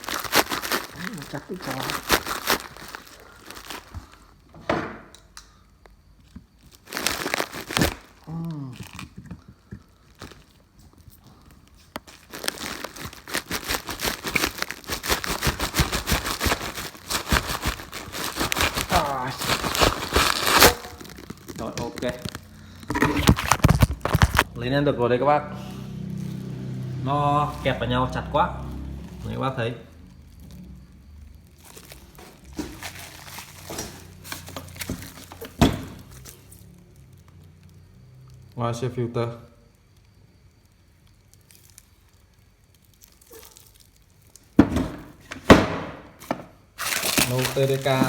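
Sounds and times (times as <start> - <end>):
packaging crinkling and rustling: 0.0 - 4.5, 6.2 - 24.5, 30.1 - 37.3, 40.6 - 44.6, 46.2 - 48.0.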